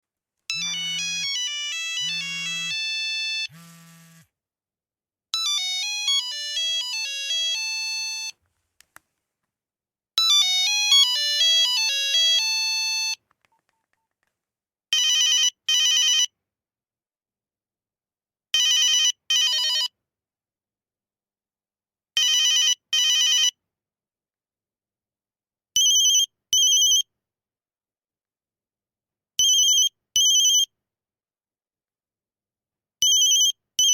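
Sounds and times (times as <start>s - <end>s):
phone ringtone beeping melody: 0.5s - 3.7s, 5.4s - 8.3s, 10.2s - 13.2s.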